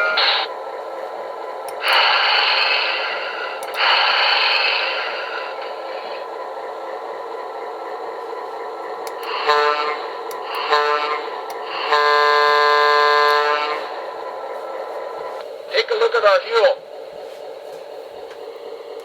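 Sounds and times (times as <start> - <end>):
diesel locomotive idling hum: 0.0 - 19.0
loud air hisses: 1.8 - 6.3, 9.2 - 14.2.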